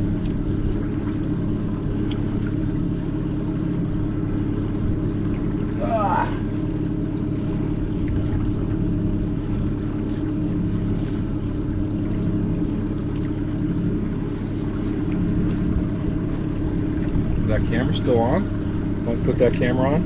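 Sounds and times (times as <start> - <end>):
boat motor humming: 0.0 - 20.0.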